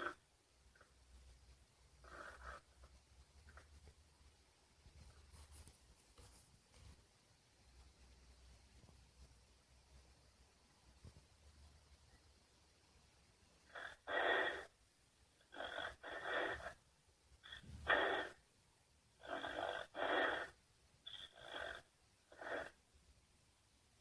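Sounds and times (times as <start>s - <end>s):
loud breathy snoring: 13.7s - 14.7s, 15.5s - 16.8s, 19.2s - 22.8s.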